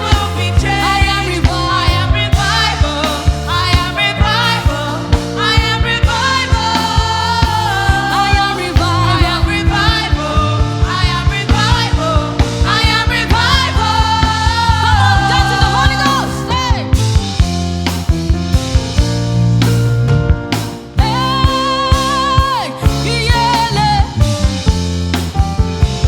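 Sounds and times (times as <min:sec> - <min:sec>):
choir singing gospel: 0:00.0 - 0:17.4, 0:21.0 - 0:24.2
bass notes: 0:00.0 - 0:26.0.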